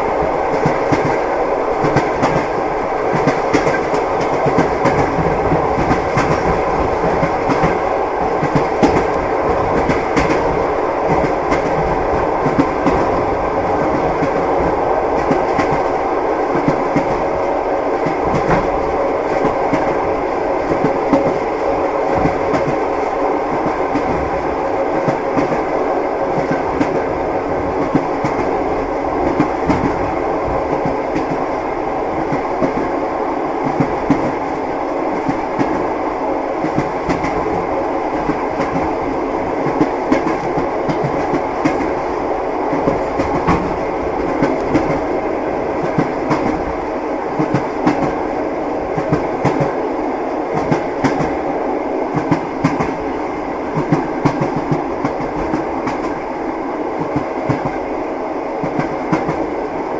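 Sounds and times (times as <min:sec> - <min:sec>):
rumble of moving train carriage: 0:00.0 - 0:59.9
train wheels clacking over rail joints: 0:00.5 - 0:15.9.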